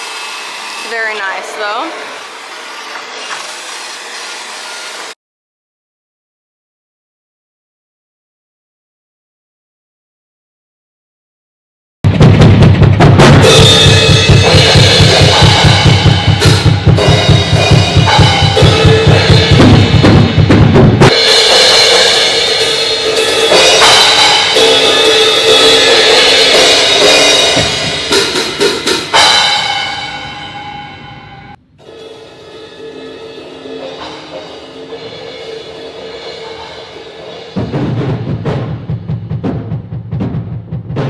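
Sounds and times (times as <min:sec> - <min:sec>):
crashing cymbals: 0:00.0 - 0:02.7, 0:13.4 - 0:20.5, 0:21.1 - 0:38.0
bass drum pattern: 0:12.0 - 0:26.3
drum kit played hard: 0:12.0 - 0:41.0.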